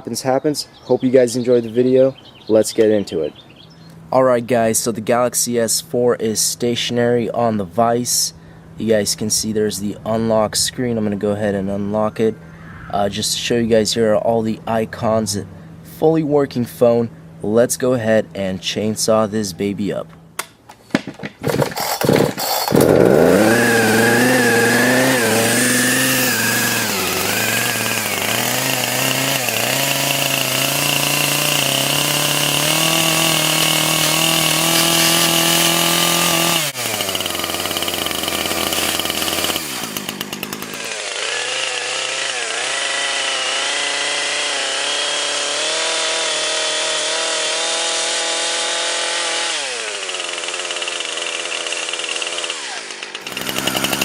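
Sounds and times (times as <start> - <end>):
chainsaw engine revving: 21.4 - 54.0.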